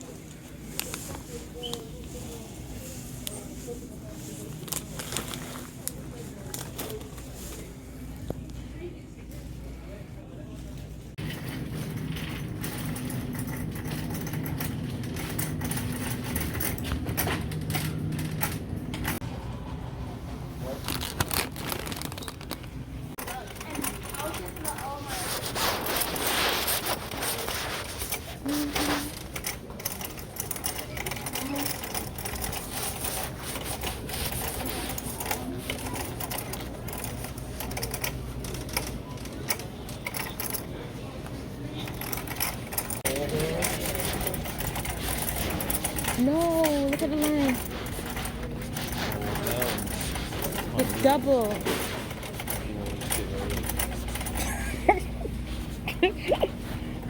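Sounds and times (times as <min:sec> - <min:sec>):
shopping cart rattling: 0:11.2 - 0:19.3, 0:20.6 - 0:56.6
murmur of voices: 0:23.2 - 0:57.0.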